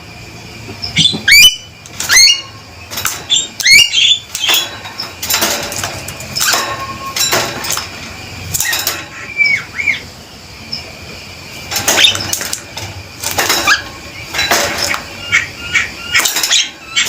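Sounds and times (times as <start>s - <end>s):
bird whistles: 0.9s - 2.6s, 3.3s - 4.6s, 9.2s - 10.1s
myna calling harsh grating notes: 8.6s - 10.2s.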